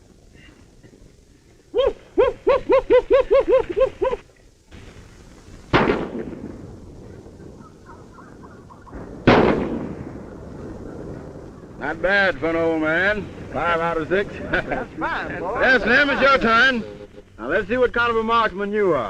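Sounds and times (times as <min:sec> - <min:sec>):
gunshots: 0:05.7 - 0:06.6, 0:08.9 - 0:10.3.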